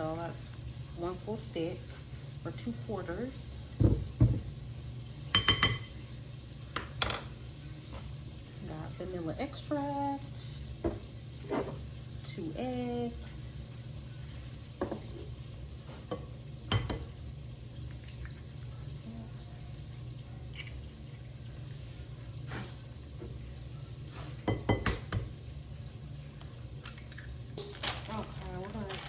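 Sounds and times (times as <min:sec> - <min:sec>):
food sizzling in oil: 0:00.0 - 0:29.0.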